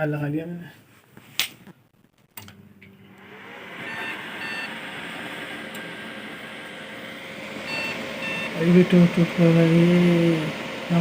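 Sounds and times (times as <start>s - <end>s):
cooling fans whirring: 2.3s - 11.0s
short beeps: 3.8s - 4.8s, 7.7s - 8.6s.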